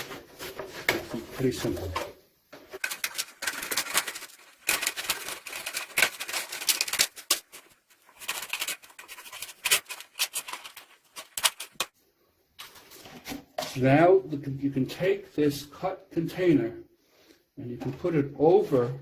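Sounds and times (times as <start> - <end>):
scissors cutting plastic: 2.8 - 11.9.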